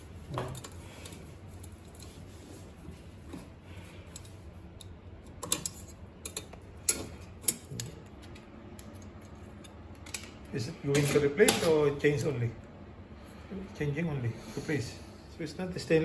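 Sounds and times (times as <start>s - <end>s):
metal parts clicking and tapping: 4.1s - 10.3s.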